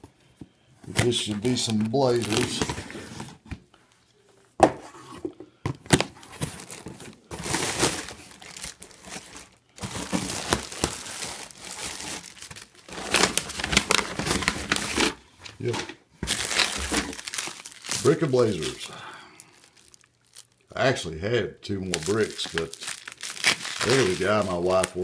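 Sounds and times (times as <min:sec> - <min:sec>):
packaging crinkling and tearing: 0:01.0 - 0:03.0, 0:05.9 - 0:20.7, 0:21.9 - 0:25.0.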